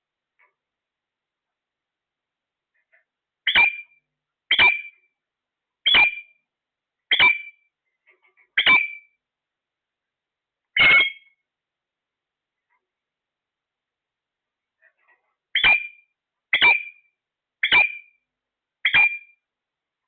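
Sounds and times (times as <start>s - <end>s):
parrot calling: 2.8s - 5.0s, 5.8s - 6.4s, 7.1s - 7.6s, 8.4s - 9.1s, 10.8s - 11.4s, 15.5s - 18.2s, 18.8s - 19.4s.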